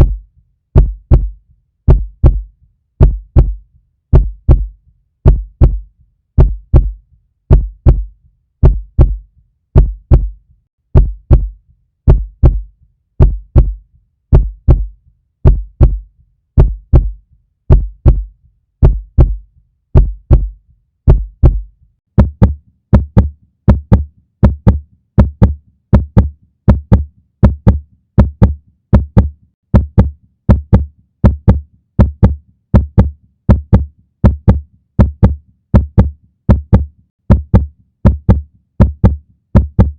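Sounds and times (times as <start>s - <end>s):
heartbeat thumps: 0.0s - 39.9s.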